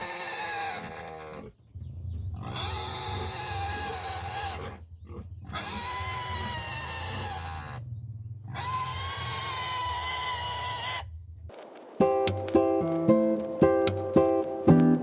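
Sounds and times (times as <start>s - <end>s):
pigs squealing: 0.0s - 1.5s, 2.4s - 7.8s, 8.5s - 11.1s.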